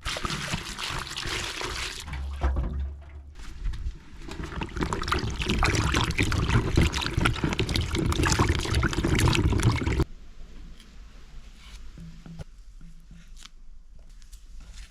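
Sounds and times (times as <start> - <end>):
water pouring and splashing: 0.0 - 10.1.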